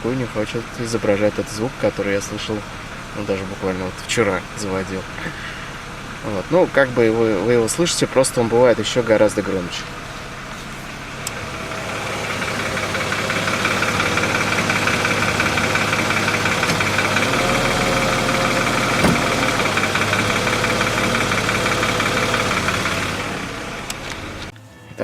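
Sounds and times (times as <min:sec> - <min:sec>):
car engine idling: 0:00.0 - 0:24.6
rapid ticking knock: 0:12.3 - 0:23.2.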